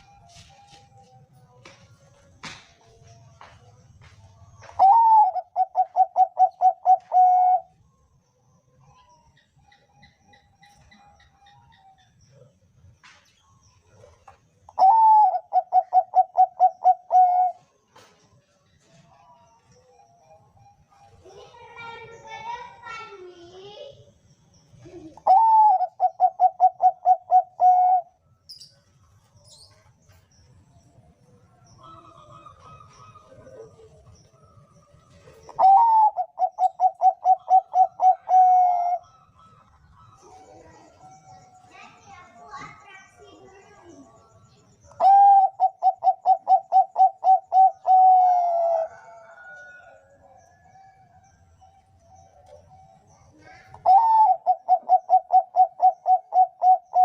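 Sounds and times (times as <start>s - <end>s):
dove cooing: 4.6s - 8.0s, 13.8s - 18.2s, 24.8s - 28.4s, 31.8s - 41.8s, 44.3s - 57.0s.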